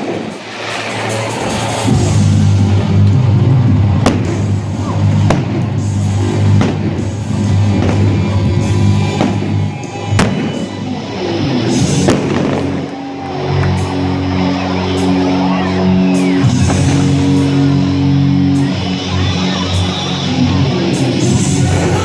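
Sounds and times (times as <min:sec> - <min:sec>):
fireworks bangs: 0:00.0 - 0:11.1, 0:11.8 - 0:13.0, 0:16.2 - 0:17.7
music with heavy bass beat: 0:00.0 - 0:22.0.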